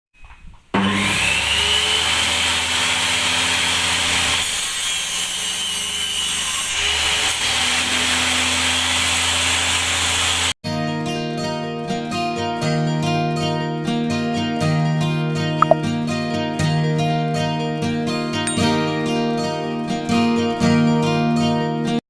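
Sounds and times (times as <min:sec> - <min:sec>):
table saw cutting wood: 0:00.8 - 0:10.6.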